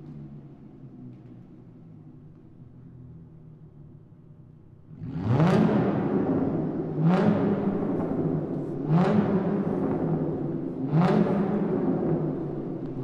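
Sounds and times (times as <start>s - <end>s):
car engine revving: 4.9s - 13.0s.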